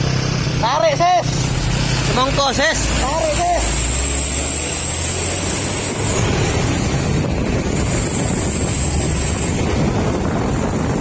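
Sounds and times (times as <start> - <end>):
truck engine rumbling: 0.0 - 11.0
wind buffeting microphone: 5.0 - 11.0.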